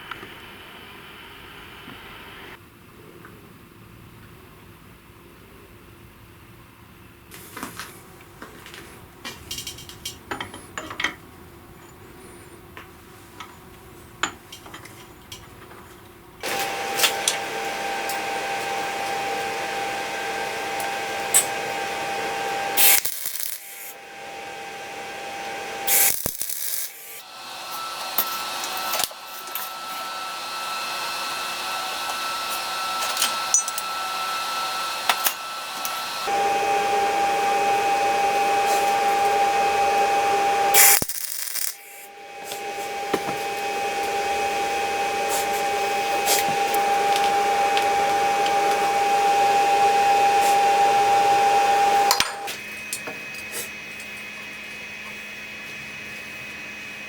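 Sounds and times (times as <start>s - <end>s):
power tool running: 16.4s - 57.0s.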